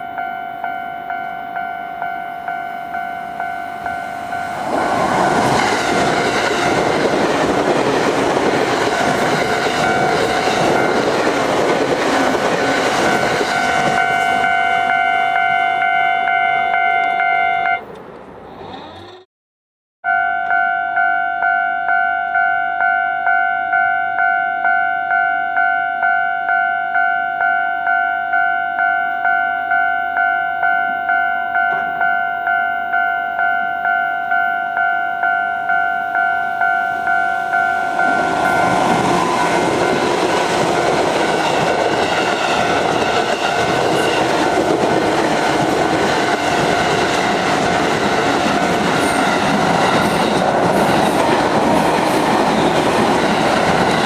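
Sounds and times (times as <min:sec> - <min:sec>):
level crossing bell ringing: 0:00.0 - 0:04.6, 0:13.6 - 0:17.8, 0:20.1 - 0:40.1
train passing over rails: 0:00.0 - 0:19.2, 0:20.1 - 0:54.0.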